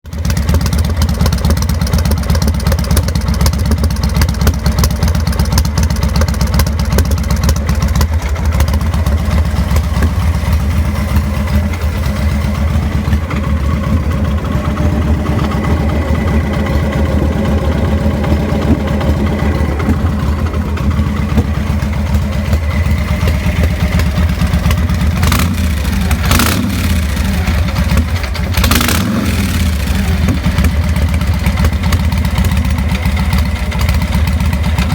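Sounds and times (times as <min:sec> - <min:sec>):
motorcycle engine idling roughly: 0:00.0 - 0:34.9.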